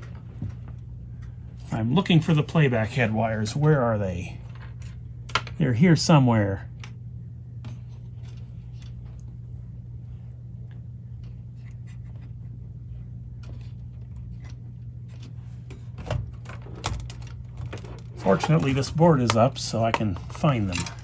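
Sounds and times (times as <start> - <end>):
steady low hum: 0.0 - 21.0
clicks and rattles of small parts: 16.4 - 21.0.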